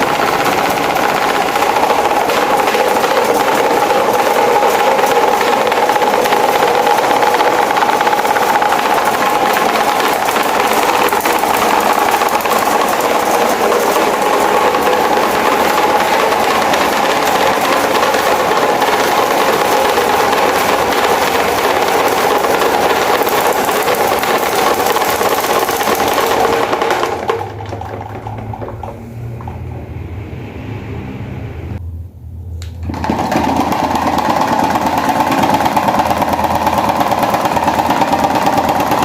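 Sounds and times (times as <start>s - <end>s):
electric fan rattling and whining: 0.0s - 39.0s
low hum: 28.1s - 32.9s.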